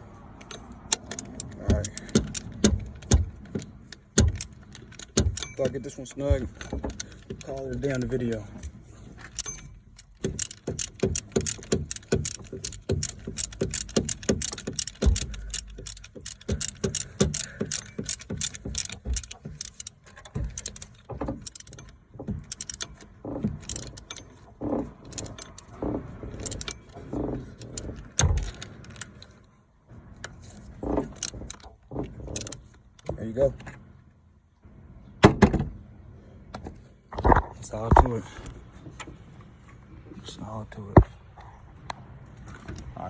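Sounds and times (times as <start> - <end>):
metal clinks: 0.4 - 25.8, 26.4 - 29.3
hand ratchet clicking: 0.4 - 29.3, 32.4 - 32.6.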